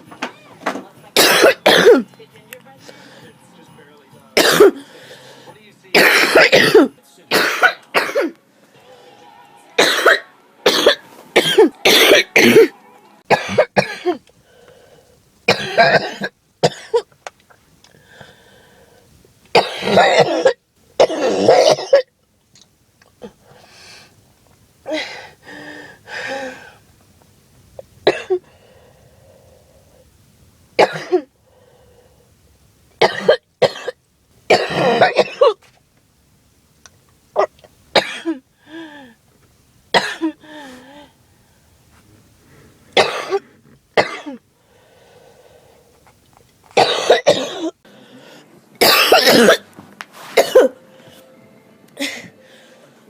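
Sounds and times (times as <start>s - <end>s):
person coughing harshly: 1.2s - 2.1s, 4.4s - 4.9s, 6.0s - 8.4s, 9.8s - 12.7s, 13.3s - 14.2s, 15.5s - 17.0s, 19.6s - 22.1s, 24.9s - 26.8s, 28.0s - 28.5s, 30.8s - 31.3s, 33.0s - 35.6s, 37.4s - 38.9s, 39.9s - 40.6s, 43.0s - 44.4s, 46.8s - 47.8s, 48.8s - 49.6s, 50.4s - 50.8s.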